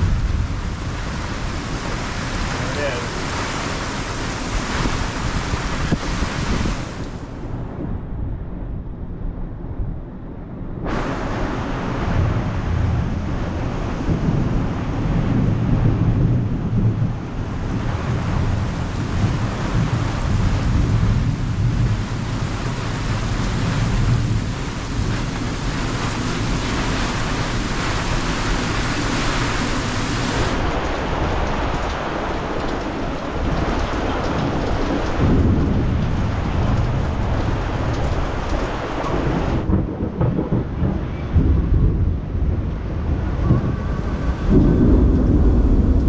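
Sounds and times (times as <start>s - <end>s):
fireworks booming and crackling: 0.0s - 10.0s, 10.8s - 46.0s.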